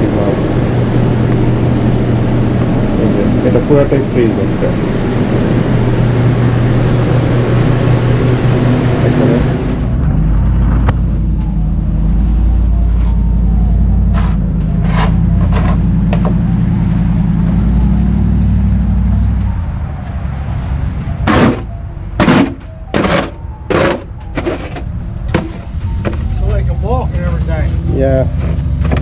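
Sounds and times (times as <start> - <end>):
low machine hum: 0.0 - 20.3.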